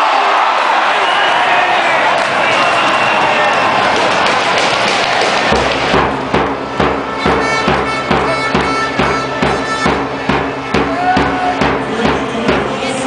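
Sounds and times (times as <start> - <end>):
steady drumbeat: 3.2 - 13.0
held horn-like tones: 6.5 - 13.0.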